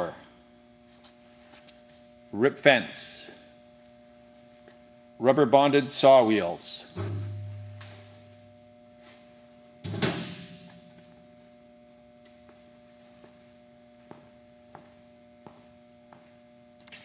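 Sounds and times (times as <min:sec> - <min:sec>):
faint steady hum: 0:00.0 - 0:17.0
percussive hit with ringing tail: 0:07.0 - 0:08.1.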